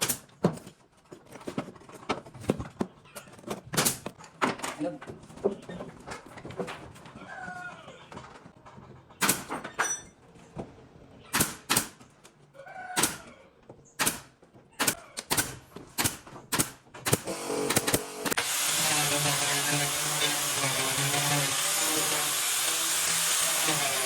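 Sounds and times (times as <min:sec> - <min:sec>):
power tool running: 0:17.1 - 0:24.0.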